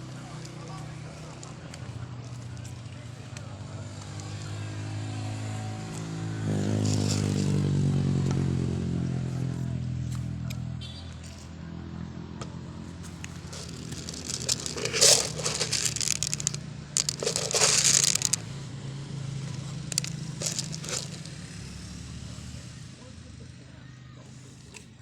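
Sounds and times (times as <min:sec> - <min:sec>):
crinkling crackling rustles: 0:06.6 - 0:07.6, 0:13.0 - 0:18.4, 0:19.6 - 0:21.4.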